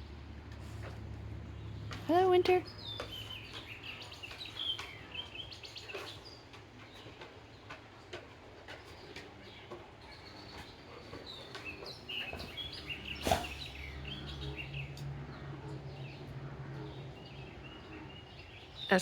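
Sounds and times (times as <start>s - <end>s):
songbirds chirping: 0.0s - 19.0s.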